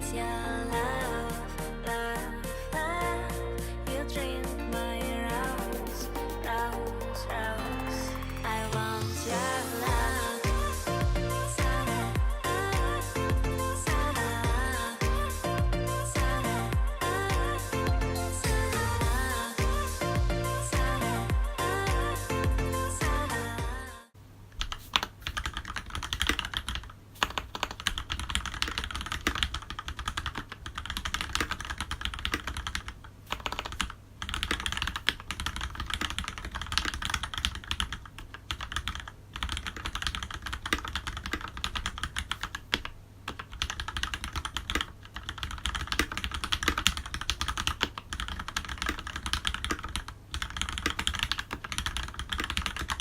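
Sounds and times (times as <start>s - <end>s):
mechanical keyboard typing: 24.6s - 53.0s.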